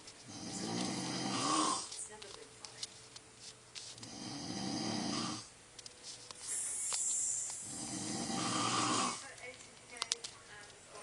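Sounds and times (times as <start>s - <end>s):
man snoring loudly: 0.3s - 1.9s, 4.0s - 5.5s, 7.6s - 9.2s.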